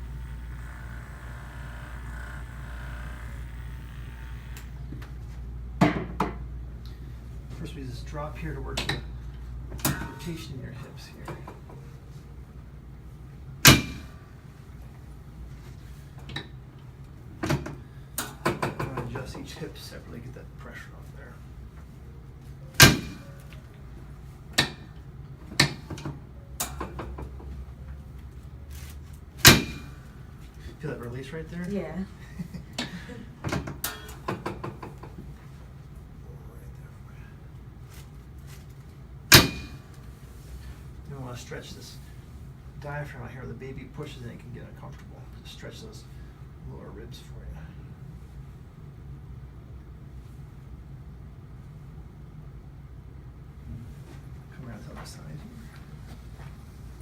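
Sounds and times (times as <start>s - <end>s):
steady low hum: 0.0s - 18.2s.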